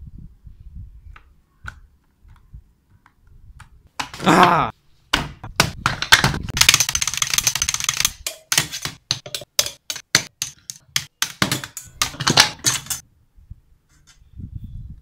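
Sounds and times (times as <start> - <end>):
laptop keys clattering: 5.8 - 13.0.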